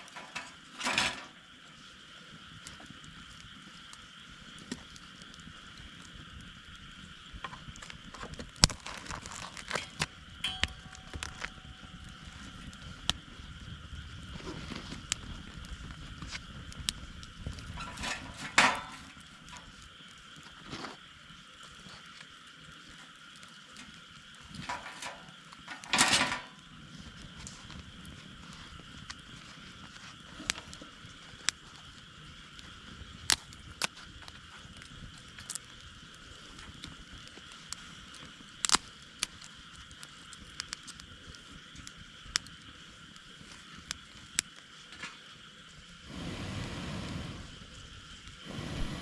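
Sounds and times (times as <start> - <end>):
campfire crackling and popping: 0.0 - 49.0
faint hiss: 0.0 - 49.0
wind on microphone: 46.1 - 49.0.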